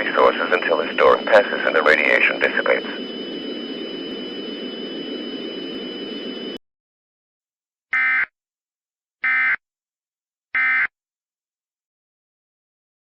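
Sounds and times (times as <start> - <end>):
broadcast hiss: 0.0 - 6.6.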